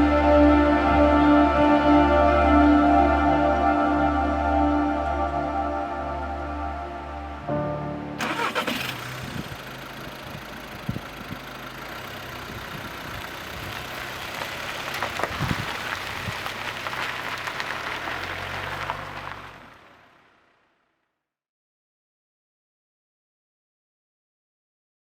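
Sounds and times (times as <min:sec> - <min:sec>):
engine starting and running: 0:08.2 - 0:20.2.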